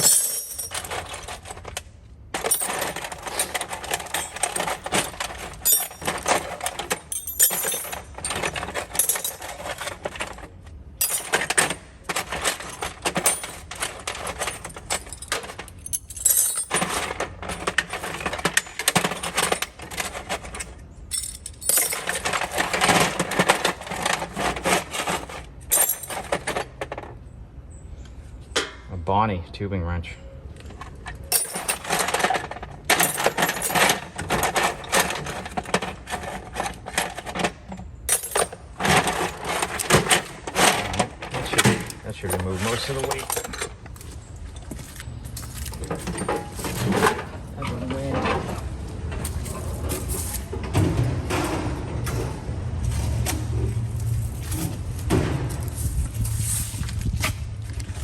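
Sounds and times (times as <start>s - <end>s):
metal hand tools clanking: 0.0s - 1.7s, 2.4s - 10.4s, 31.2s - 43.8s.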